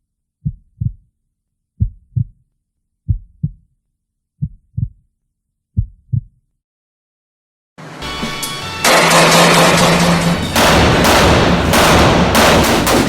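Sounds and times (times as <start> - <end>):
heartbeat thumps: 0.4 - 1.1, 1.8 - 2.4, 3.1 - 3.7, 4.4 - 5.0, 5.8 - 6.4.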